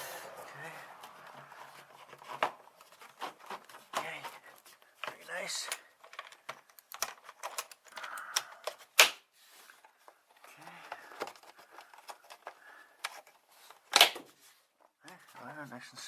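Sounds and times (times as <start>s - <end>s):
clinks of metal parts and tools: 5.0s - 8.1s.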